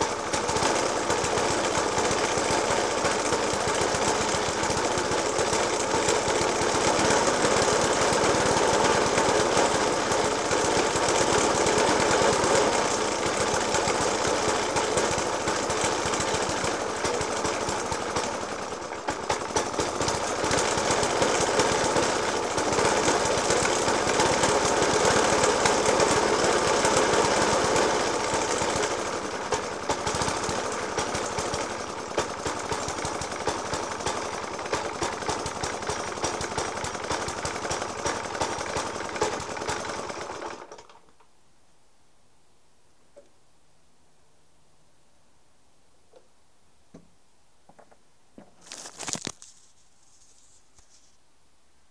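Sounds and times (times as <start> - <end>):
lawnmower engine idling roughly: 0.0 - 41.1.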